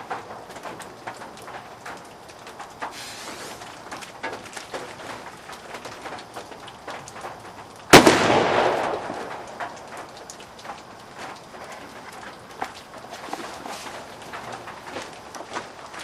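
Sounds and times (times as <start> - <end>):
faint clicks: 0.0 - 7.9, 8.5 - 16.0
sharp firework blast: 8.0 - 9.4.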